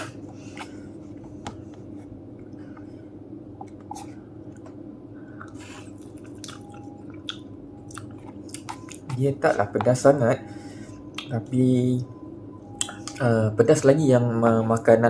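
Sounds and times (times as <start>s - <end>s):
steady low hum: 0.0s - 15.0s
person chewing noodles: 3.6s - 9.6s, 12.8s - 13.2s.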